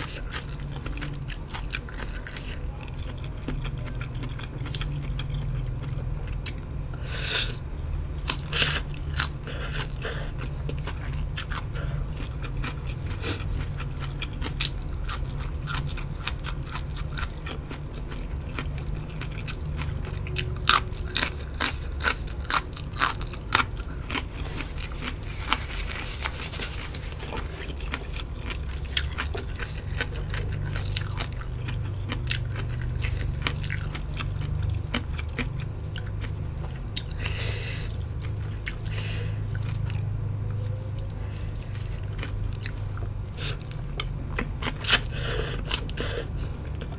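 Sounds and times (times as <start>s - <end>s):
chewing crisp food crunches: 0.0s - 46.9s.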